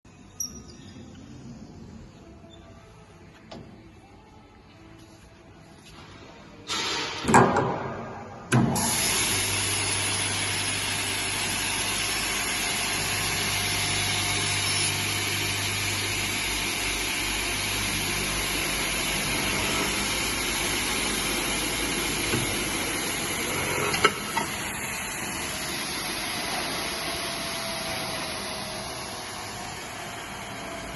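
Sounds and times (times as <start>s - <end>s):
miter saw motors running: 8.8s - 30.9s.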